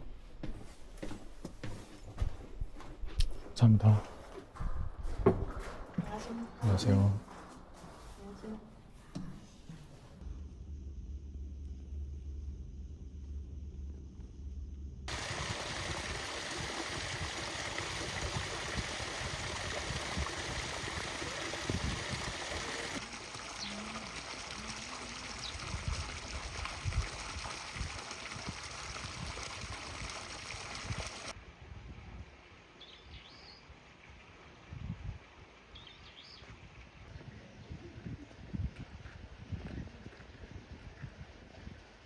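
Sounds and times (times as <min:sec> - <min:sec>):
running water rushing: 0:15.1 - 0:31.4
faint bird chirps: 0:32.8 - 0:33.7.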